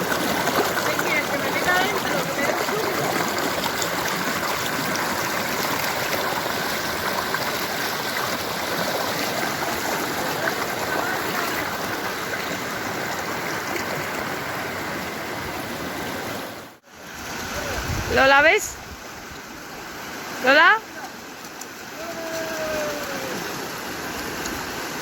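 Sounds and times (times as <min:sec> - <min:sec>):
stream rushing and gurgling: 0:00.0 - 0:25.0.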